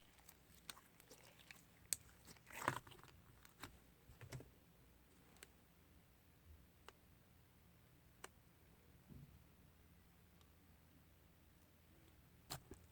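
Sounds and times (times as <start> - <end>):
slime squish: 0.0 - 4.5.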